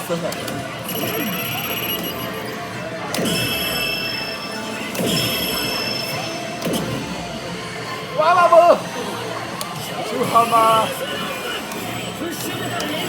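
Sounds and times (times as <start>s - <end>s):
high electronic ringing tones: 0.8s - 7.2s
game machine crash hits: 3.2s - 7.3s.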